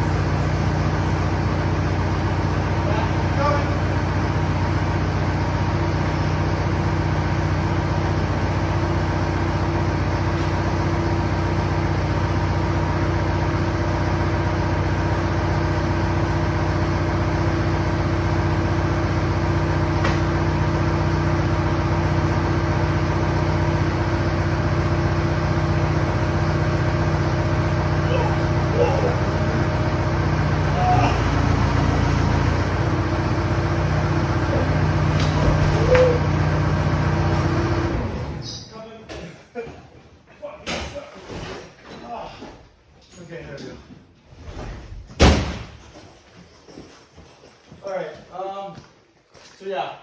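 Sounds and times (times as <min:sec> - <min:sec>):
tractor engine running: 0:00.0 - 0:38.4.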